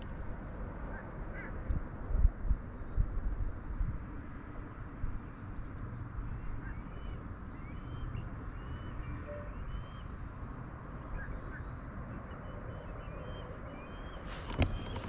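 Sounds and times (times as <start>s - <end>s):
wind buffeting microphone: 1.6s - 5.3s, 12.1s - 15.0s
faint bird chirps: 6.2s - 15.0s
thin high whine: 9.2s - 9.8s.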